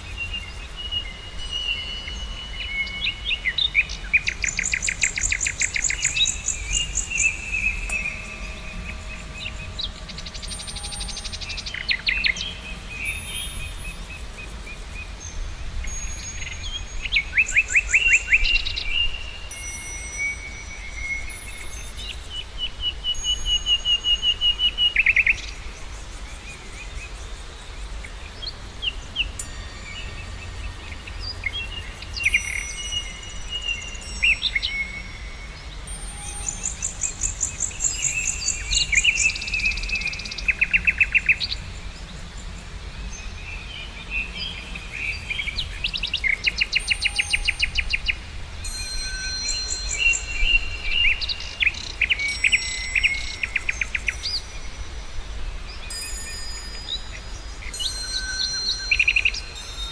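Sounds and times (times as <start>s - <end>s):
birds chirping and trilling: 0.0s - 59.9s
steady low rumble: 5.7s - 15.7s.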